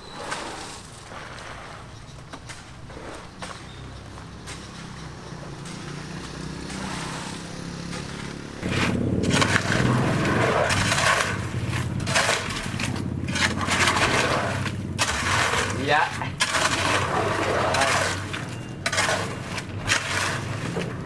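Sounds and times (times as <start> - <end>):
rough scraping and crunching: 0.0 - 21.0
low machine hum: 8.5 - 21.0.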